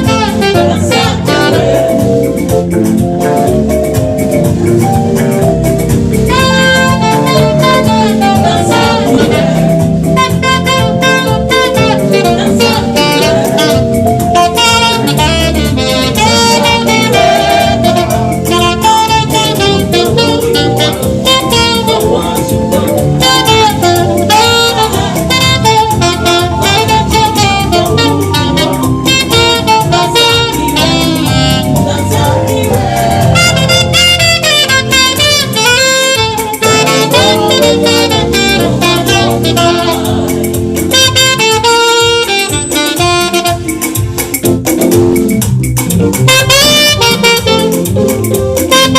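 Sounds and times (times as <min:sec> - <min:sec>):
band accompaniment: 0:00.0 - 0:48.9
saxophone quick melodic runs: 0:00.0 - 0:48.9.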